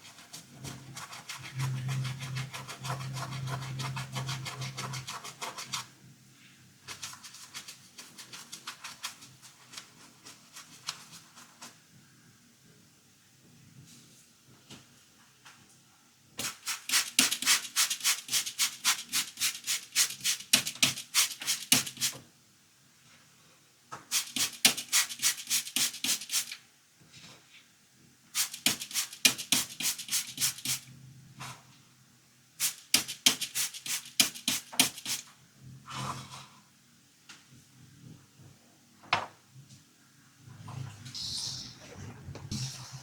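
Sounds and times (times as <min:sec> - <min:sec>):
brush scrubbing plastic toy: 0:00.0 - 0:05.9, 0:06.9 - 0:11.8, 0:16.4 - 0:22.1, 0:24.1 - 0:26.6, 0:28.4 - 0:30.8.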